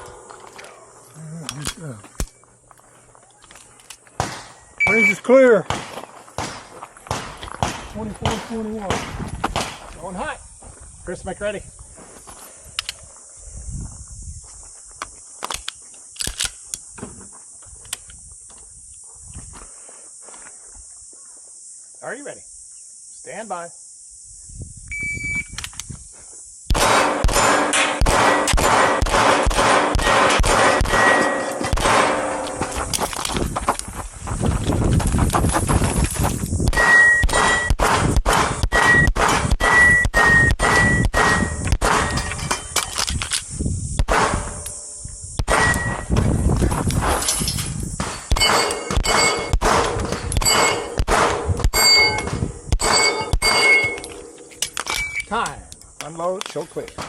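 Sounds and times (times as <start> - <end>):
handgun shots: 4.2 - 4.6, 5.7 - 9.8, 26.7 - 32.7, 36.7 - 43.1, 44.0 - 44.7, 45.4 - 45.9, 48.0 - 55.1
shot timer beep: 4.8 - 5.2, 24.9 - 25.5, 36.7 - 37.8, 38.7 - 41.7, 45.5 - 46.1, 51.7 - 54.0
handgun firing rapidly: 26.7 - 32.4, 48.3 - 51.9
steel targets clanging: 26.9 - 33.0, 47.0 - 55.3.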